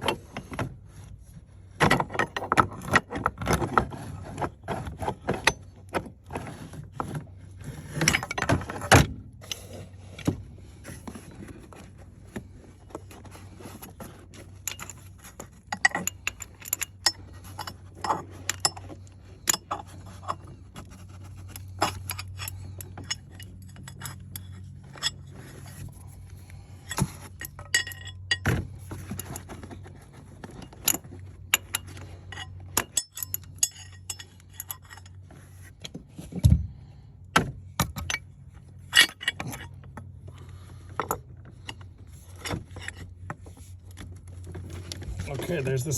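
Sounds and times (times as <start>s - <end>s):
steady low hum: 4.1s - 45.9s.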